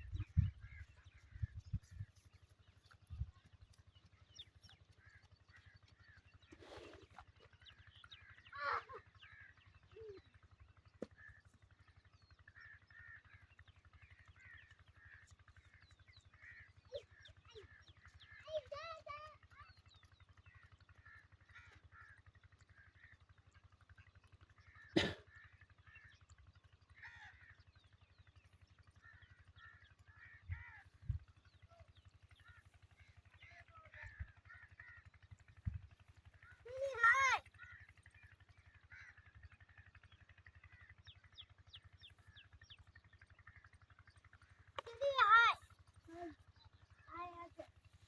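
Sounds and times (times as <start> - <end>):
birds chirping: 0.0 - 22.1, 27.0 - 48.0
low steady hum: 0.0 - 48.0
crows cawing: 12.6 - 13.4, 21.0 - 22.2, 27.0 - 27.6, 29.0 - 31.0, 32.4 - 35.2, 36.4 - 38.2, 38.8 - 39.3.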